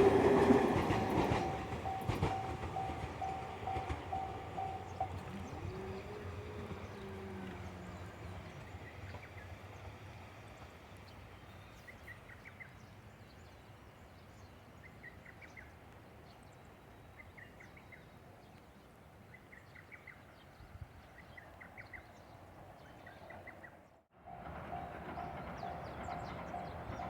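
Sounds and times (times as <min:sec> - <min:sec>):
outdoor background hum: 0:00.0 - 0:12.9.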